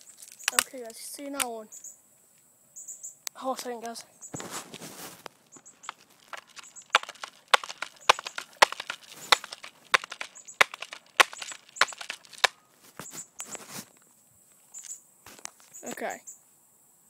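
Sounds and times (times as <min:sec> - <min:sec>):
footsteps crunching on dry leaves: 0:04.3 - 0:13.9.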